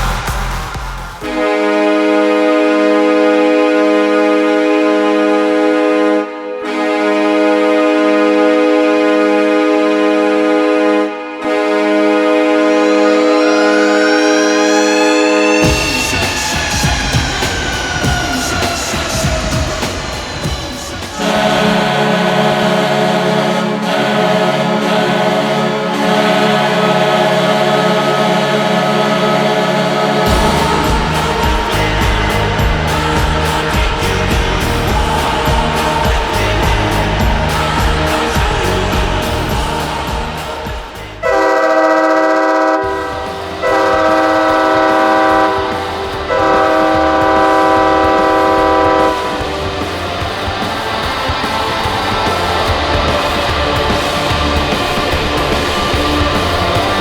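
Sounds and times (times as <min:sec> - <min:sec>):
goal horn blast: 0:00.0 - 0:17.2, 0:21.2 - 0:49.8
arena noise: 0:13.3 - 0:41.3.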